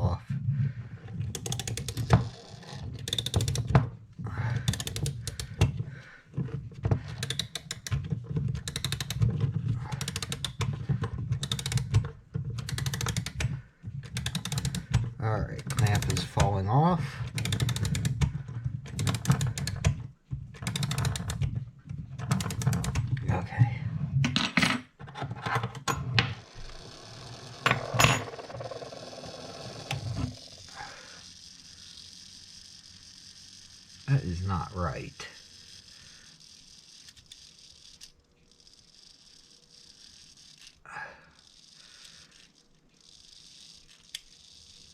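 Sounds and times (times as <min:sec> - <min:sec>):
clock winding ratchet clicks: 0:01.2 - 0:05.8, 0:07.0 - 0:20.0, 0:20.6 - 0:21.6, 0:22.2 - 0:23.2, 0:25.8 - 0:44.9
metal clicks from clock parts: 0:01.3 - 0:02.2, 0:03.0 - 0:03.8, 0:04.6 - 0:05.7, 0:07.1 - 0:09.3, 0:09.9 - 0:10.7, 0:11.4 - 0:16.6, 0:17.3 - 0:20.0.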